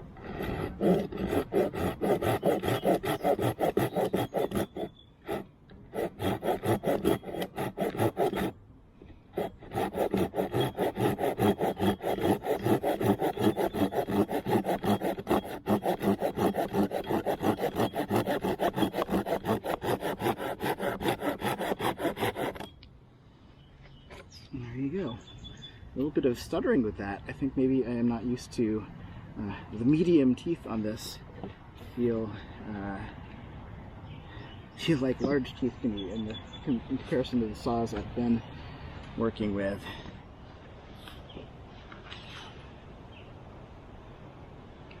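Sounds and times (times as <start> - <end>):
pull saw cutting wet branch: 0.0 - 8.6, 9.3 - 22.7.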